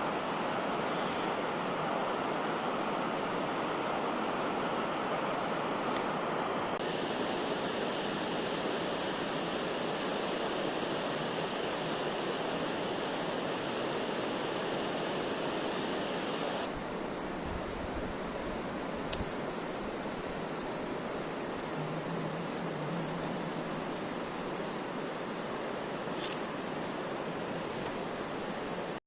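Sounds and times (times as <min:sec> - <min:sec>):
fast-flowing stream water: 0:00.0 - 0:29.0.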